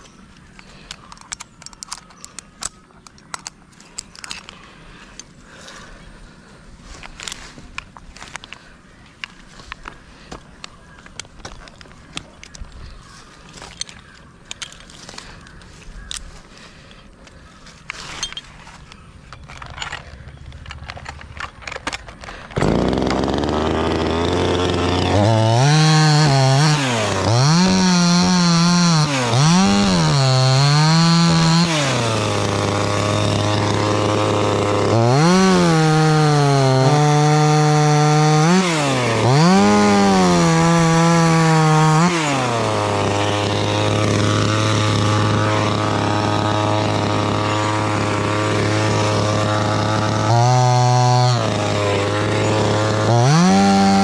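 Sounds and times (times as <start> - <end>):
chainsaw idling and revving: 22.2 - 54.0.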